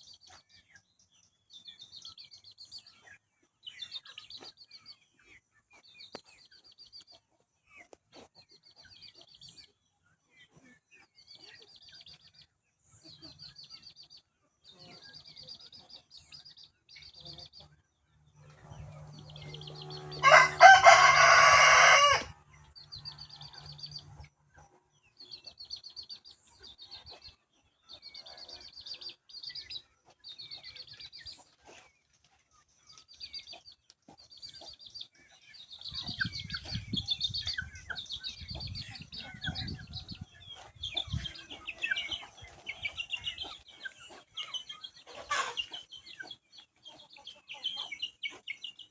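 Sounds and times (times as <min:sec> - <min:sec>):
small birds chirping and trilling: 0:00.0 - 0:48.9
rooster crowing: 0:19.8 - 0:22.4.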